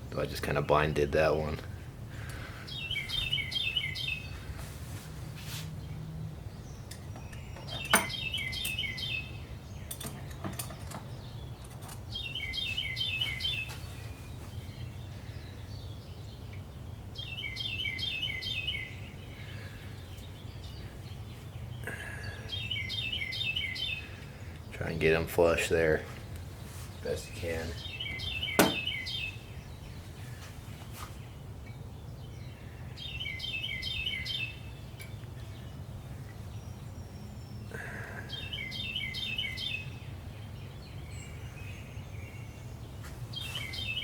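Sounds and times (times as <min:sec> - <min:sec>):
steady low hum: 0:00.0 - 0:12.4
songbird chirping: 0:00.0 - 0:44.0.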